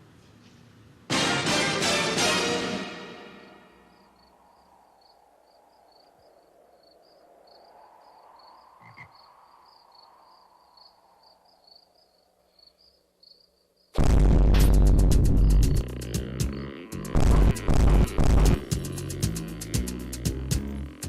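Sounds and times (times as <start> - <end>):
faint crickets chirping: 3.4 - 14.0.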